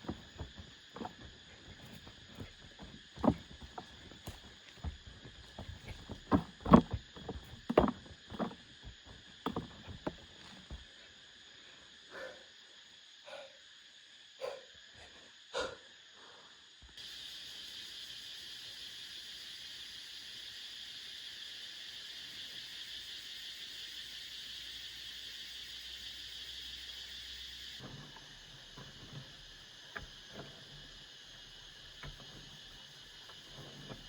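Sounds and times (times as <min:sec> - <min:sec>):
irregular knocks and thuds: 0:00.0 - 0:10.9
high insect drone: 0:00.0 - 0:34.0
insect chirring: 0:00.0 - 0:34.0.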